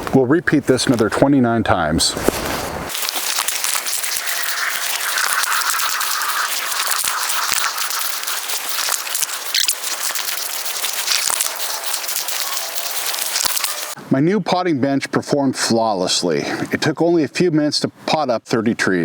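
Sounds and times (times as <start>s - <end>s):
potting mix rustling and crackling: 2.1s - 14.0s.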